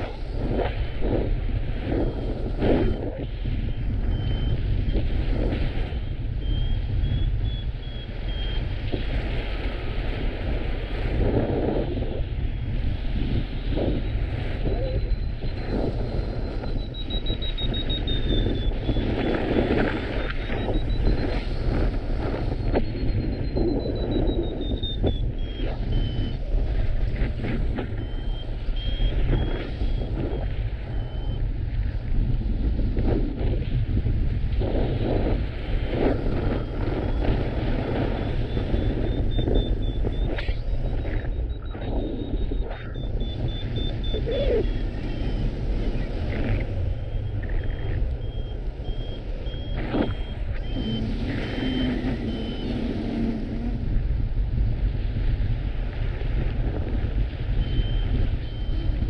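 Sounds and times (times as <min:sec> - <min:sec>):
wind buffeting microphone: 0:00.0 - 0:59.0
short high-pitched beeps: 0:14.7 - 0:19.4, 0:20.2 - 0:21.6, 0:22.6 - 0:26.5, 0:27.9 - 0:30.2, 0:38.2 - 0:53.2, 0:57.6 - 0:59.0
variometer falling tone: 0:38.4 - 0:53.8.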